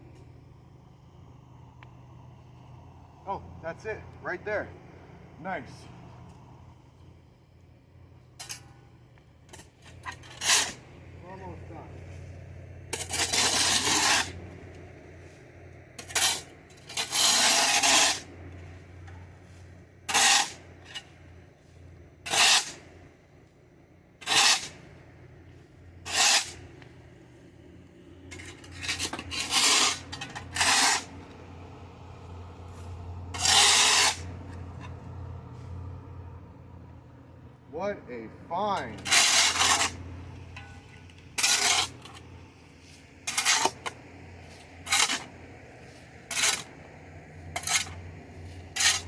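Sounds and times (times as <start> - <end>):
shovel scraping concrete: 8.4 - 8.7, 9.5 - 12.3, 12.9 - 14.6, 16.0 - 21.2, 22.2 - 23.0, 24.2 - 24.9, 26.0 - 27.0, 28.3 - 31.5, 32.7 - 34.9, 38.8 - 49.0.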